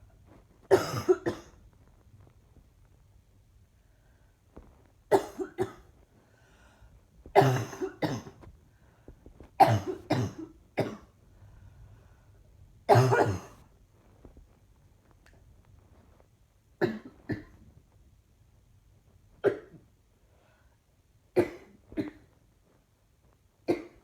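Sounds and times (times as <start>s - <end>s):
woman coughing: 0.7s - 1.5s, 5.1s - 5.8s, 7.4s - 8.4s, 9.6s - 11.1s, 12.9s - 13.6s.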